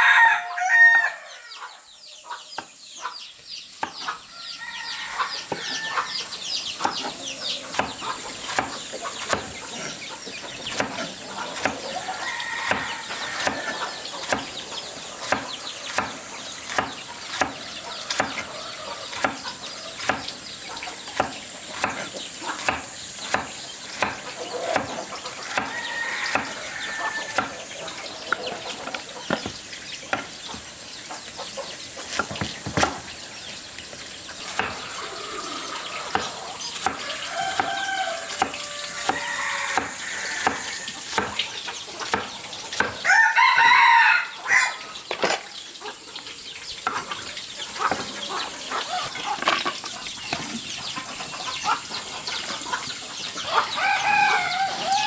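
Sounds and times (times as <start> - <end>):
rooster crowing: 0.0 - 1.8, 4.3 - 6.3, 11.9 - 14.0, 25.5 - 27.5, 36.9 - 41.2, 43.0 - 44.9, 53.5 - 55.0
chickens clucking: 0.0 - 55.0
high insect drone: 17.7 - 45.1.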